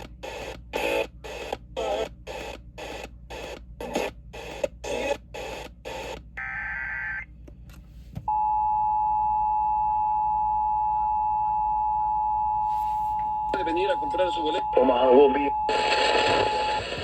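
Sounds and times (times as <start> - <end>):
pulsing broadcast static: 0.0 - 7.2, 13.6 - 17.0.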